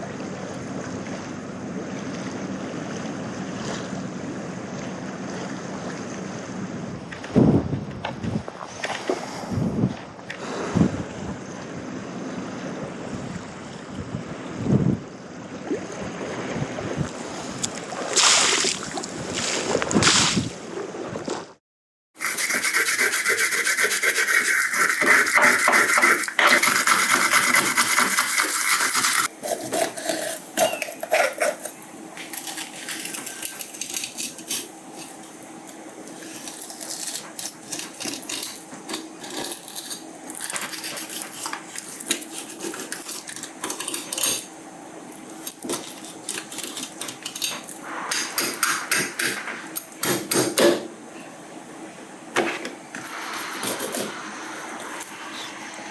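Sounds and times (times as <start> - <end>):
rasping scrapes: 22.2 - 35.3, 36.1 - 44.4.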